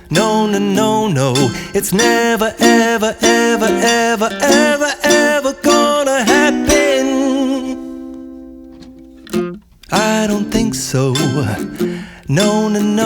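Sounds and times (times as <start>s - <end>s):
person singing: 0.0s - 8.5s, 9.9s - 13.0s
plucked strings: 0.0s - 13.0s.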